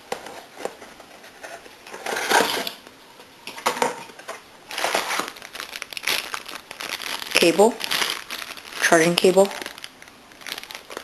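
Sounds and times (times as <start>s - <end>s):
packaging rustling and crinkling: 4.1s - 11.0s.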